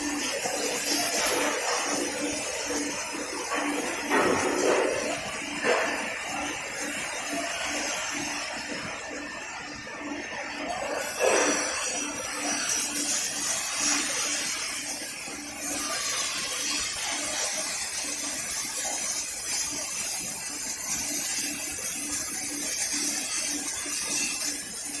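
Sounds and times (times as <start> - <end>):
arc welder hiss: 0.0 - 25.0.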